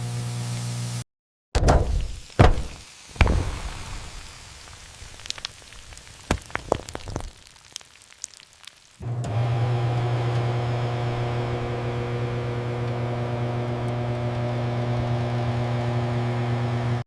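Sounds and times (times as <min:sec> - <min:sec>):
microwave oven humming: 0:00.0 - 0:01.0, 0:09.0 - 0:17.0.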